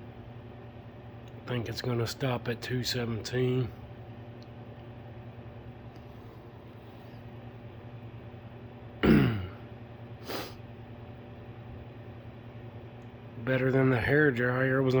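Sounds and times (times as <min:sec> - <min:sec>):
steady low hum: 0:00.0 - 0:15.0
man clearing his throat: 0:09.0 - 0:09.7
short puff of breath: 0:10.2 - 0:10.6.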